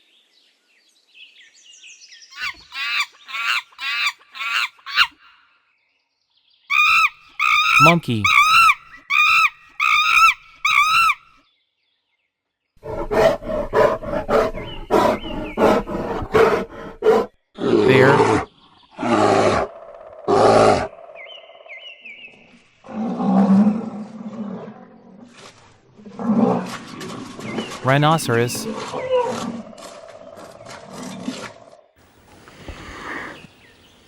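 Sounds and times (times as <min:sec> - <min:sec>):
monkey short cries: 0:06.7 - 0:11.2
person speaking word: 0:07.8 - 0:08.4, 0:17.8 - 0:18.2, 0:27.8 - 0:28.7
bear growling: 0:12.8 - 0:21.0.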